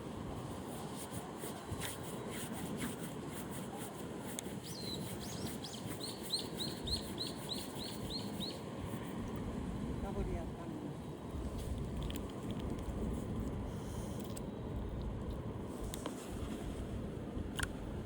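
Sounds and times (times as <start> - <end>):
small bird singing repeated notes: 4.6 - 8.6.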